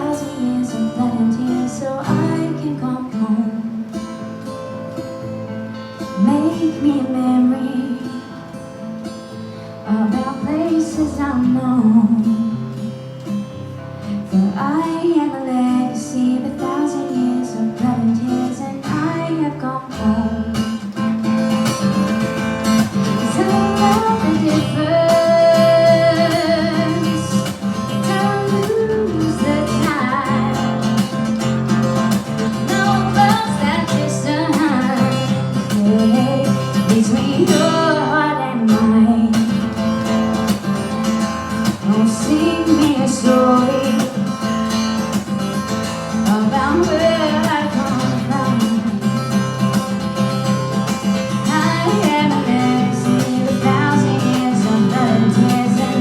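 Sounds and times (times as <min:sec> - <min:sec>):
woman singing slow melody: 0:00.0 - 0:04.0, 0:06.1 - 0:08.6, 0:09.8 - 0:13.0, 0:14.1 - 0:20.9, 0:23.0 - 0:31.3, 0:31.9 - 0:39.8, 0:41.7 - 0:44.3, 0:46.2 - 0:49.2, 0:51.4 - 0:56.0
acoustic guitar strummed and picked: 0:00.0 - 0:56.0.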